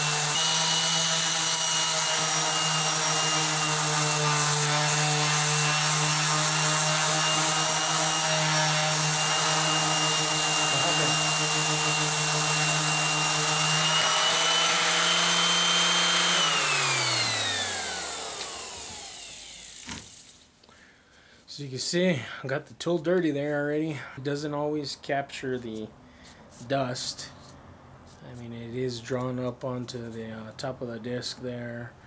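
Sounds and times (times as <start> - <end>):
orbital sander sanding wood: 0.0 - 20.4.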